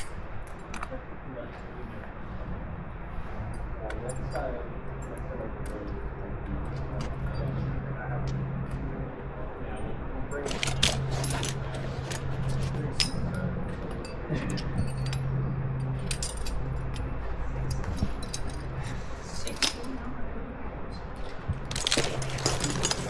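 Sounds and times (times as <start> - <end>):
steady low hum: 0.0 - 23.0
carabiners clinking: 10.3 - 20.1, 21.2 - 23.0.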